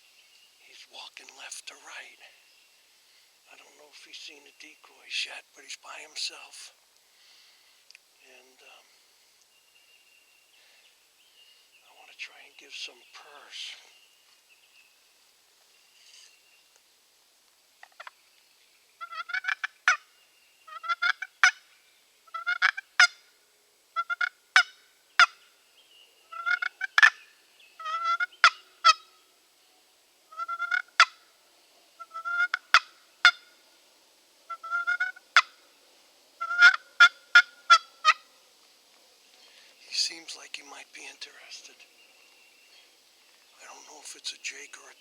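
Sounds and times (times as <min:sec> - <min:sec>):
turkey call clicks: 0:19.0 - 0:20.0, 0:20.7 - 0:21.6, 0:22.3 - 0:23.2, 0:24.0 - 0:25.4, 0:26.3 - 0:27.2, 0:27.8 - 0:29.1, 0:30.3 - 0:31.2, 0:32.0 - 0:33.6, 0:34.5 - 0:35.6, 0:36.4 - 0:38.3
turkey call purrs: 0:34.5 - 0:35.5, 0:36.4 - 0:38.3.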